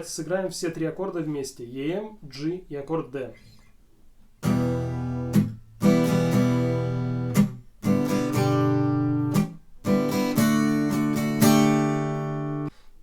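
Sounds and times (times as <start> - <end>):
acoustic guitar strumming: 4.4 - 12.7.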